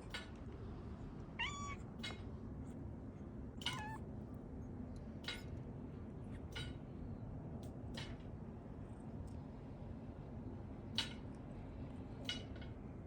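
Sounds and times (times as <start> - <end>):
cat meowing: 1.4 - 1.8, 3.6 - 4.0.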